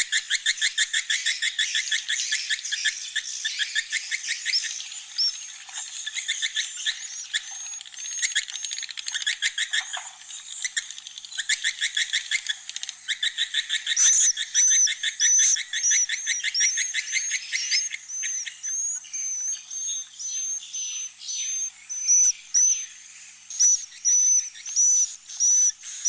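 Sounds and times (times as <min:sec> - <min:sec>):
high whistled bird chirps: 0:13.1 - 0:26.0.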